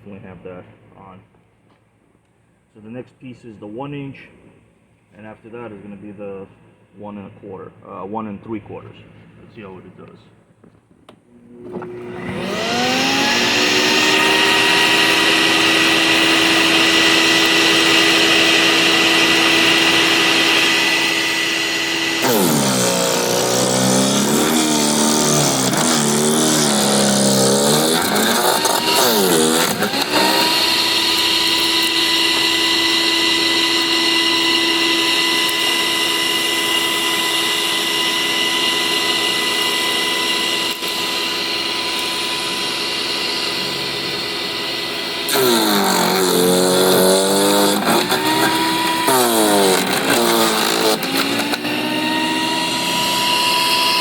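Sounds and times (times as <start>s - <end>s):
wood chipper shredding branch: 11.4s - 54.0s.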